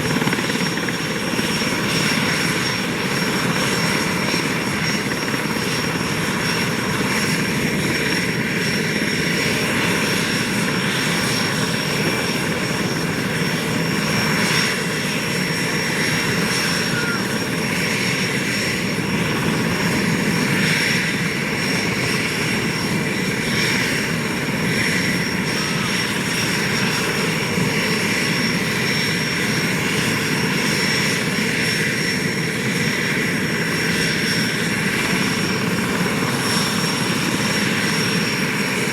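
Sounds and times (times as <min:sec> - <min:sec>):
high turbine whine: 0:00.0 - 0:30.5
helicopter engines running: 0:00.0 - 0:38.9.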